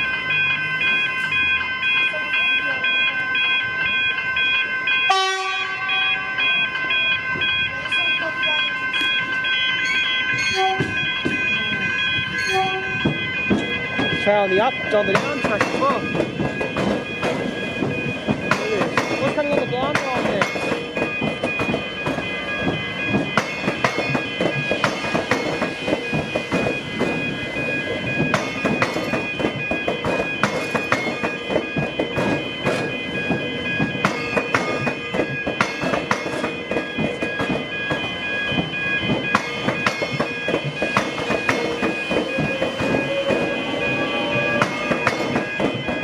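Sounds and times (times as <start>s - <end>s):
high ringing tones: 0.0s - 46.0s
train wheels clattering: 9.0s - 46.0s
rising tone: 40.4s - 45.9s.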